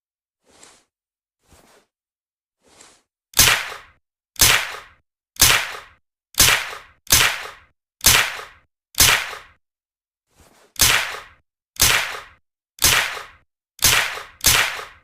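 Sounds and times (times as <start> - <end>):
suppressed gunshots: 10.8 - 15.0.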